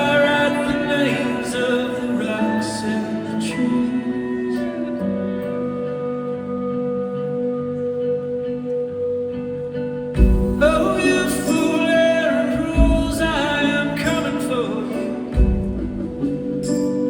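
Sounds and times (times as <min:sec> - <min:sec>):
deep drum beats: 0:10.2 - 0:11.6, 0:12.5 - 0:14.3, 0:15.3 - 0:16.7.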